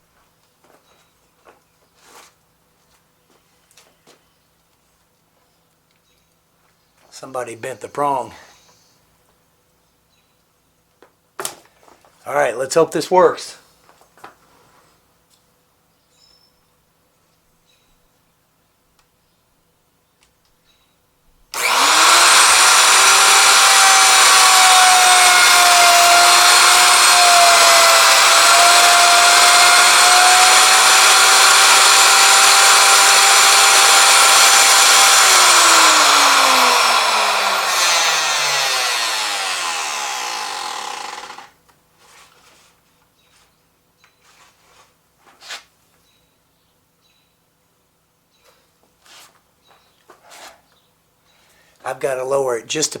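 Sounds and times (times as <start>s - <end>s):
electric router whining: 21.6s - 41.6s.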